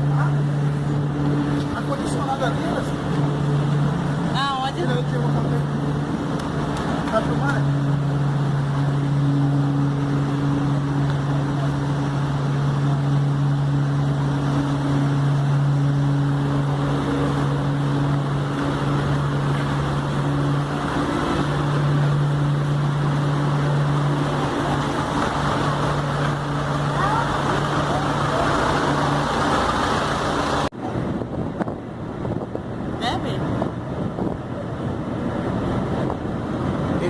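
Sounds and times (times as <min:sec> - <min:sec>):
ferry engines droning: 0:00.0 - 0:37.0
water noise: 0:00.0 - 0:37.0
wind: 0:00.0 - 0:37.0.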